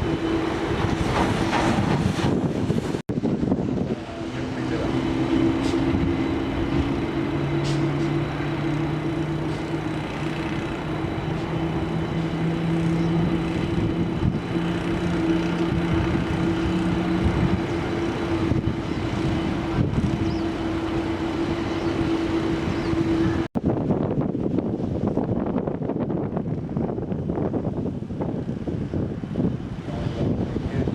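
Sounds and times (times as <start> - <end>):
jet airliner drone: 0.0 - 30.9
low hum: 3.1 - 23.7.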